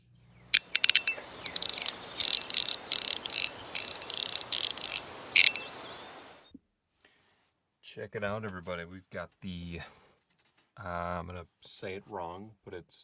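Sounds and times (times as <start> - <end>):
sharp metal clicks: 0.5 - 6.4.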